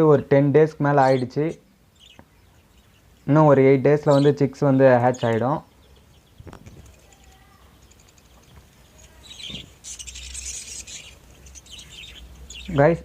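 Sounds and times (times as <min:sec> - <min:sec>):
budgerigars chirping: 0:00.1 - 0:13.0.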